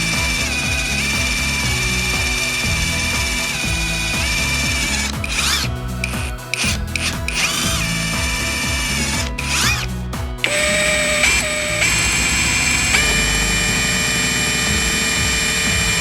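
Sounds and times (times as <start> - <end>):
background music: 0.0 - 16.0
cordless drill motor whine: 7.4 - 9.8, 10.5 - 16.0.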